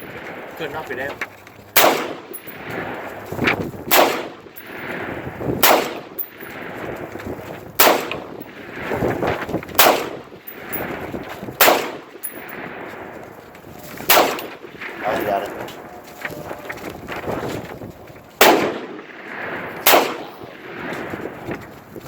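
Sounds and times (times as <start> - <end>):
rifle gunshots: 0.0 - 16.3, 18.4 - 21.7.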